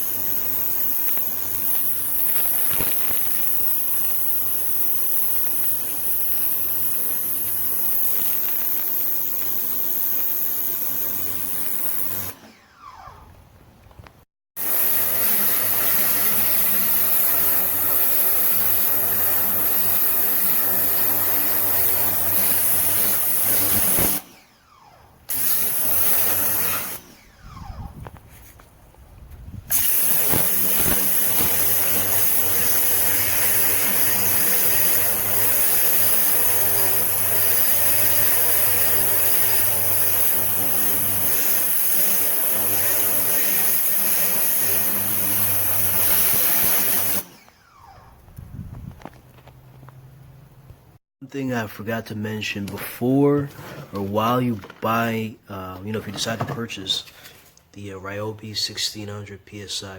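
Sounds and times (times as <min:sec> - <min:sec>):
pressure washer motor and pump hum: 0:14.6 - 0:28.6, 0:29.7 - 0:48.3
water spray hissing: 0:29.7 - 0:47.2.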